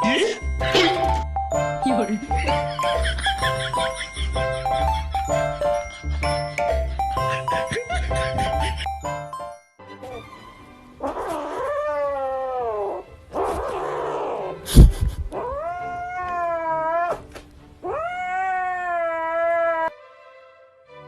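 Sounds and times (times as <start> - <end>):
cat yowling: 11.0 - 14.6, 15.3 - 17.2, 17.8 - 19.9.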